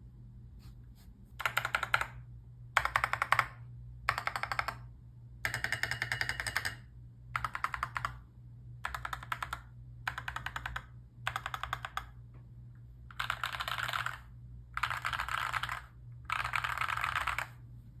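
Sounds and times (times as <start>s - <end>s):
typing on mechanical keyboard: 1.4s - 2.2s, 2.8s - 8.2s, 8.8s - 12.2s, 13.1s - 17.6s.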